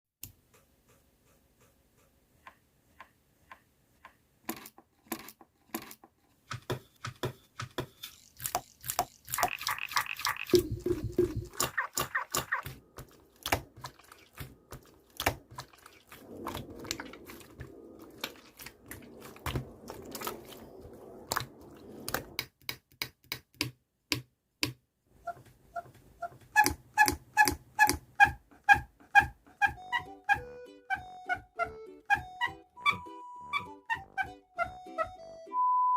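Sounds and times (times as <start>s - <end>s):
slime squishing: 8.3s - 22.4s
light bouncy music: 10.5s - 11.6s, 29.6s - 35.6s.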